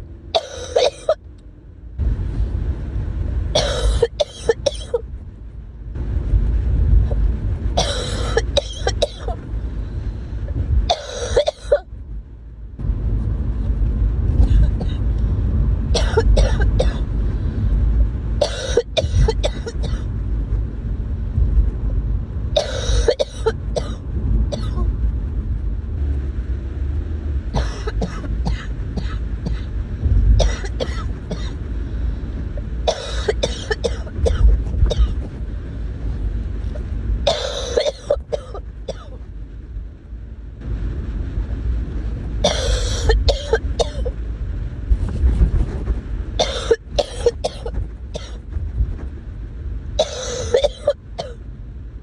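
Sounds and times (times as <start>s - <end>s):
low rumble: 0.0s - 52.0s
person coughing: 0.4s - 1.2s, 3.6s - 5.0s, 7.8s - 9.4s, 10.9s - 11.8s, 14.4s - 15.0s, 16.0s - 17.0s, 18.4s - 20.0s, 22.6s - 24.0s, 24.6s - 24.9s, 27.6s - 29.7s, 30.4s - 31.6s, 32.9s - 35.2s, 37.3s - 39.2s, 42.4s - 44.1s, 46.4s - 48.4s, 50.0s - 51.4s.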